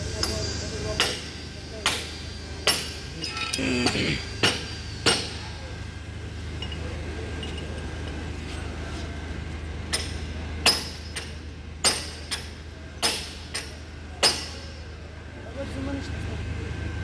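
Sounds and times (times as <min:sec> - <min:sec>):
steady low hum: 0:00.0 - 0:17.0
metal parts clinking: 0:03.2 - 0:03.6.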